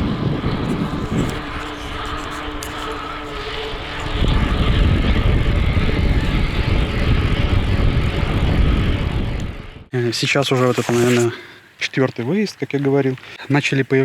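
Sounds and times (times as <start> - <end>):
wind rumbling on microphone: 0.0 - 9.9.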